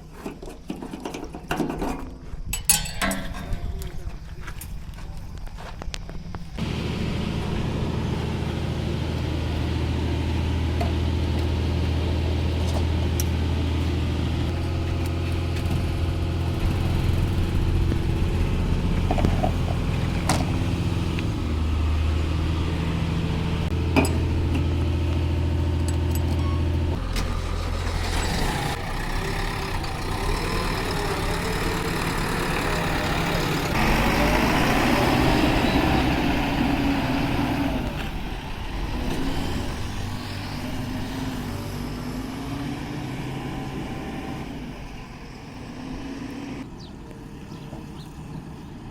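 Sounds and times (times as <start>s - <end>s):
sharp metal clanks: 2.5s - 4.2s
diesel engine running: 2.9s - 48.9s.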